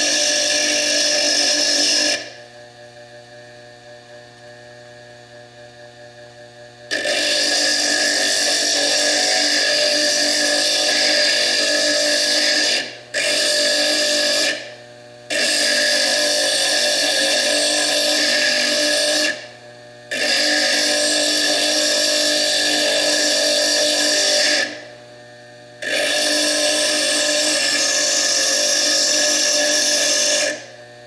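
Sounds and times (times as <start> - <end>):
lathe grinding stone: 0.0 - 2.4, 6.9 - 19.5, 20.1 - 24.9, 25.8 - 30.9.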